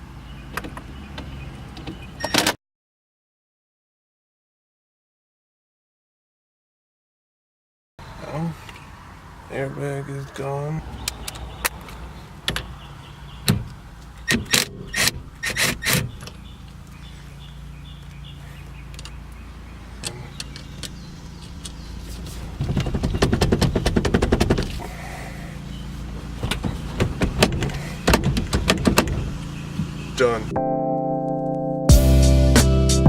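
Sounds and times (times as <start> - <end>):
rapid even clicking: 22.6 - 24.8.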